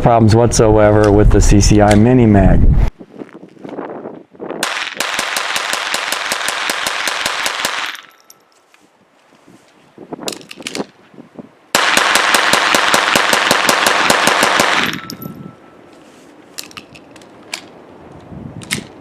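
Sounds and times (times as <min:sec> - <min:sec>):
rapid pistol shots: 0:04.6 - 0:08.1, 0:11.8 - 0:15.1.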